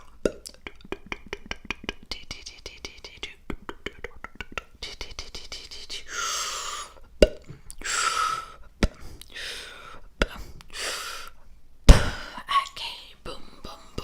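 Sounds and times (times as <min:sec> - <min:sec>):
lip pops: 0:00.1 - 0:02.0.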